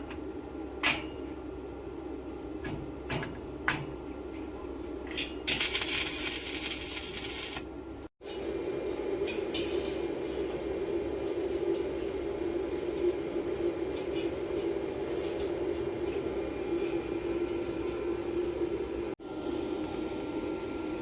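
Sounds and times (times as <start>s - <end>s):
machine hum: 5.5s - 8.0s.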